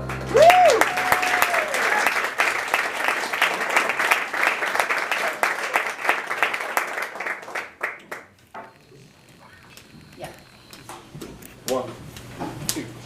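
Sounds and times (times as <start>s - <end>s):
audience applause: 0.0s - 8.8s.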